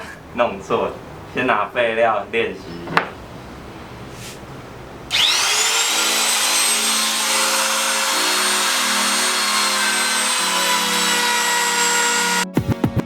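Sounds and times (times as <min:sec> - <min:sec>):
router whining: 0:05.0 - 0:12.4.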